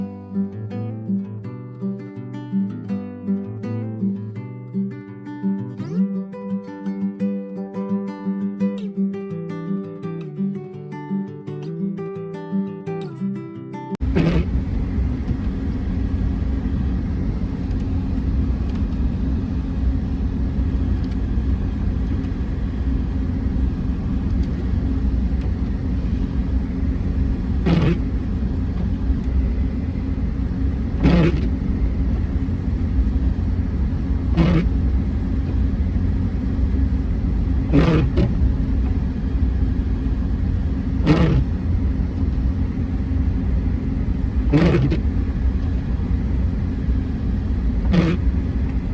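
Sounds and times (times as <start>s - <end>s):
car engine and road rumble: 14.0s - 48.9s
windshield wipers swishing: 14.0s - 48.9s.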